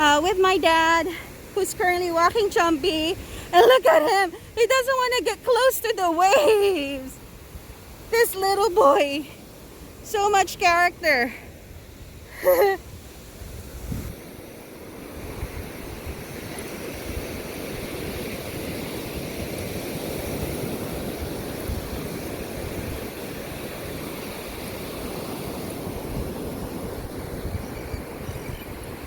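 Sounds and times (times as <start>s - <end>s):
waves breaking on sand: 0.0s - 29.0s.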